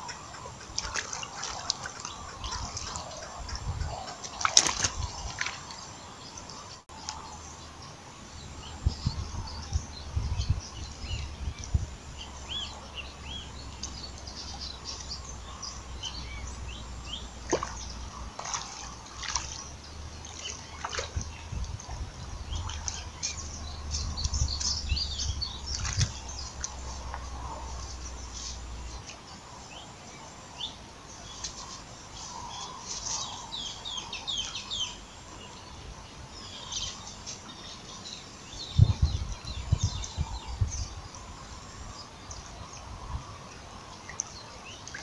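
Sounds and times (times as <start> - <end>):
small birds chirping: 0.0 - 45.0
steady low rumble: 7.3 - 29.0.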